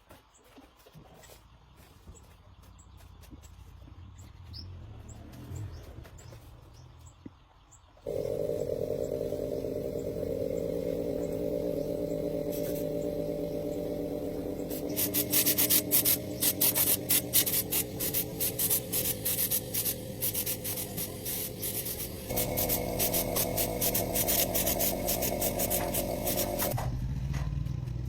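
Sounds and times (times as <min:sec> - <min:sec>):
faint chirps: 0:08.0 - 0:26.7
motor running: 0:08.1 - 0:26.9
low background hum: 0:08.1 - 0:27.8.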